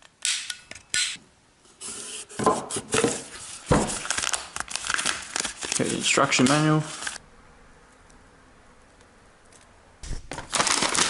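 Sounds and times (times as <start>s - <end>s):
packaging rustling: 2.9s - 7.2s, 9.6s - 11.0s.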